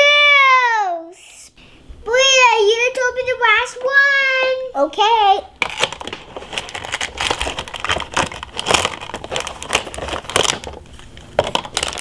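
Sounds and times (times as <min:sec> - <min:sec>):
packaging crinkling and rustling: 0:05.6 - 0:12.0.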